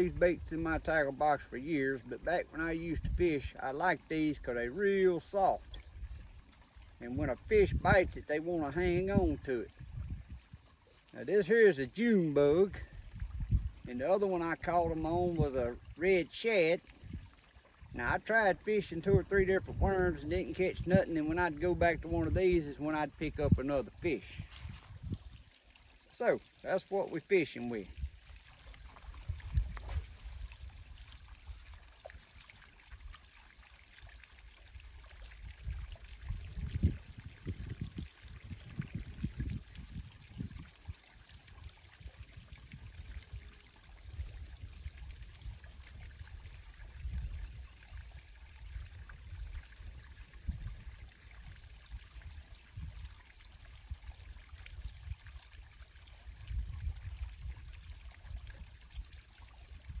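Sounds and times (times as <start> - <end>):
faint steady hiss: 0.0 - 38.0
wind buffeting microphone: 2.7 - 3.5, 7.1 - 10.6, 12.8 - 13.9, 18.8 - 25.4, 29.0 - 31.6, 35.4 - 41.0, 42.0 - 53.2, 56.4 - 58.7.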